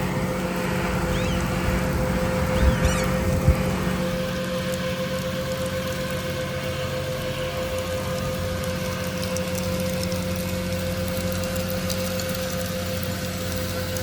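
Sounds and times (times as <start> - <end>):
mid-pitched whine: 0.0 - 7.4
tractor engine running under load: 0.0 - 14.0.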